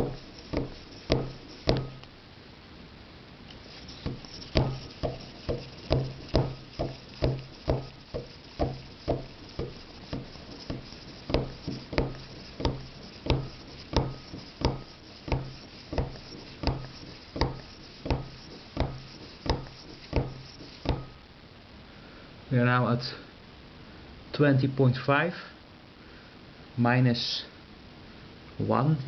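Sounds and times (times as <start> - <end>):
hand pump strokes: 0.0 - 2.0, 3.6 - 21.1.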